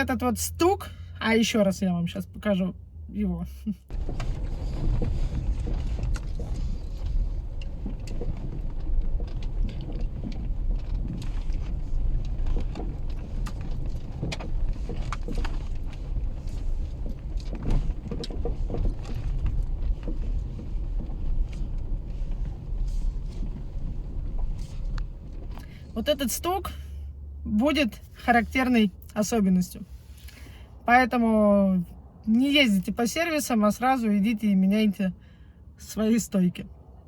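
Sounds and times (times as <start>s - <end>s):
car rumbling on road: 0.0s - 37.0s
suspension link knocking: 3.9s - 25.8s.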